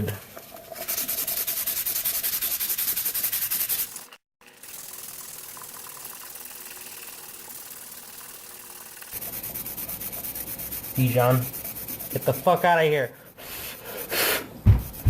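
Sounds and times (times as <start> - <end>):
sandpaper rasping on metal: 0.9 - 4.1, 9.5 - 15.0.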